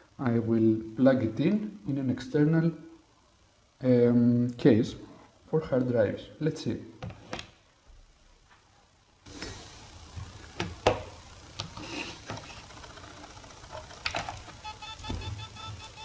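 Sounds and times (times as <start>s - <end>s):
hard drive clicks: 10.2s - 16.0s
rapid repeating beep: 14.6s - 16.0s.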